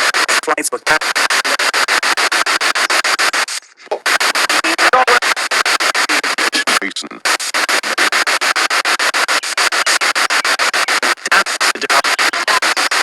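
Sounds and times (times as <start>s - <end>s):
broadcast voice snatches: 0.0s - 13.0s
radio static bursts: 0.0s - 13.0s.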